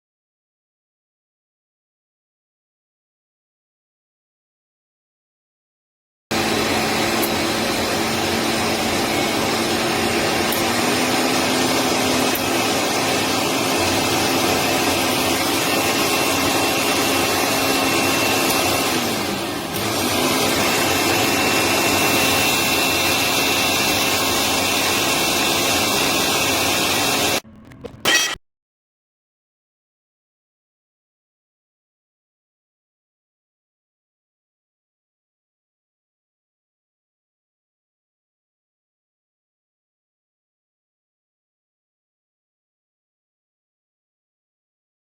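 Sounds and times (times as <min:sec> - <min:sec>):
blender motor whirring: 0:06.3 - 0:28.1.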